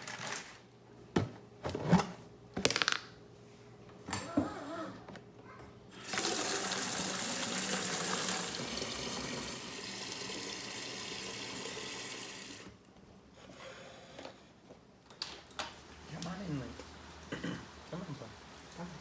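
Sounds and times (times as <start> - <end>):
water running from a tap: 6.0 - 12.7.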